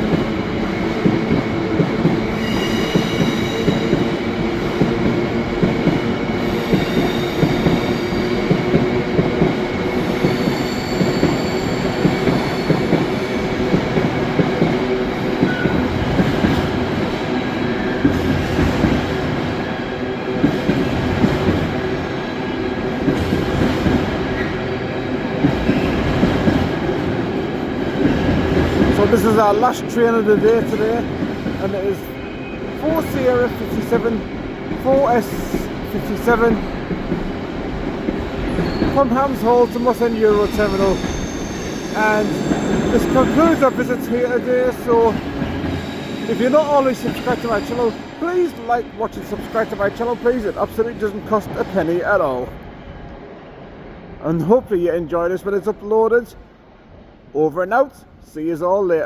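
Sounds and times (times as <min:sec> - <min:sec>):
train wheel squeal: 0:02.3 - 0:04.2, 0:06.4 - 0:08.4, 0:09.8 - 0:13.6, 0:15.4 - 0:15.9, 0:32.1 - 0:32.7, 0:38.4 - 0:43.8, 0:45.0 - 0:48.4
freight train wagons clattering: 0:38.0 - 0:52.4.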